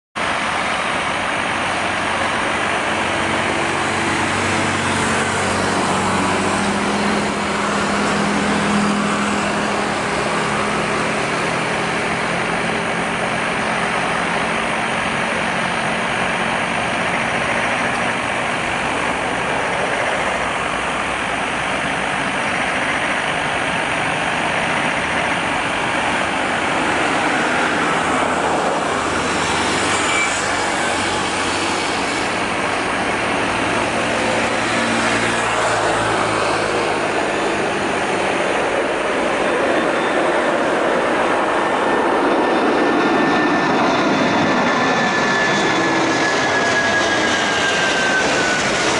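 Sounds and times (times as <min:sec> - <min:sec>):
jet engines at takeoff: 0:00.2 - 0:48.9.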